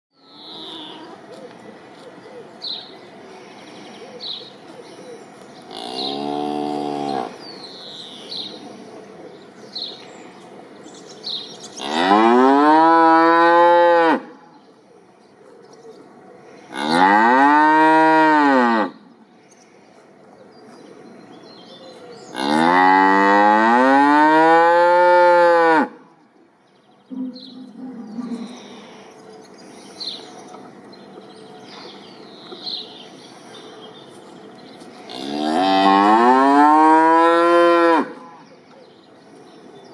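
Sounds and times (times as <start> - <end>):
cow mooing: 5.7 - 7.4.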